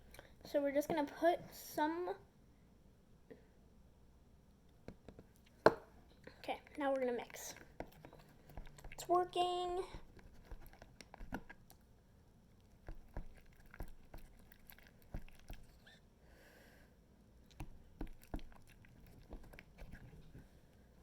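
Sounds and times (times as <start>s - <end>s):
slime wet clicks and squishes: 17.4s - 20.0s.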